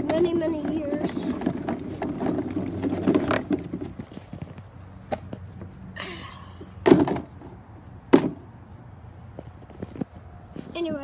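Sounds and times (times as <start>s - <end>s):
heavy thump: 8.1s - 8.4s.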